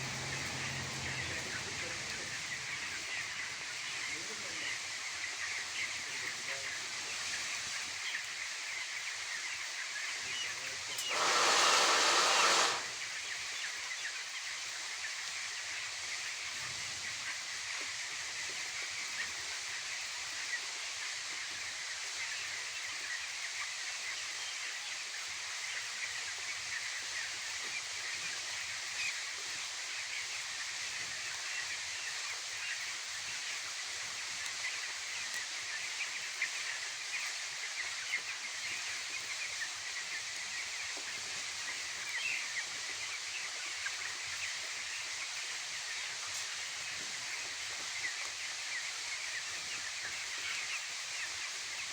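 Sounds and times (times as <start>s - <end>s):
loud hiss: 0.0s - 2.9s, 10.9s - 13.1s
chicks cheeping: 0.0s - 51.9s.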